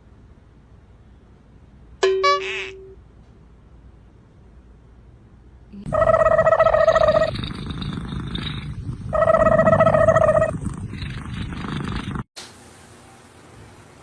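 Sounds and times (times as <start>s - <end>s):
animal calling: 5.9s - 7.6s, 8.4s - 10.6s
rough rumbling noise: 5.9s - 12.3s.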